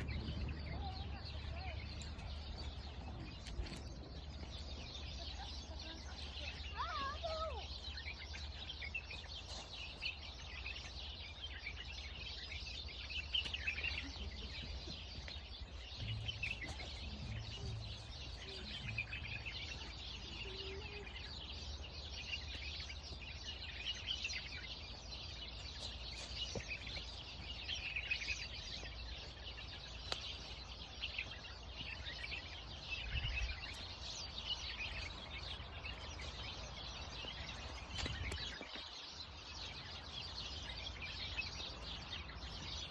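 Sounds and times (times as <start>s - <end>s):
steady low rumble: 0.0s - 6.7s, 10.0s - 30.2s
songbirds chirping and twittering: 0.0s - 42.9s.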